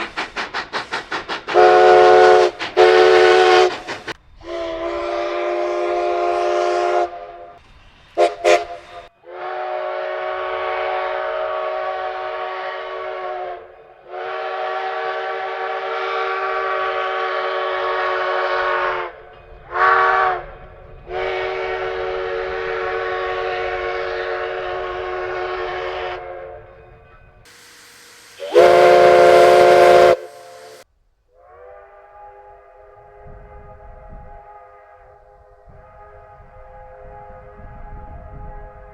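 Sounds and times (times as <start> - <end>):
steam locomotive whistle: 0.0 - 7.6, 8.2 - 26.8, 27.5 - 38.9
steam hiss: 0.0 - 13.5, 27.4 - 30.9.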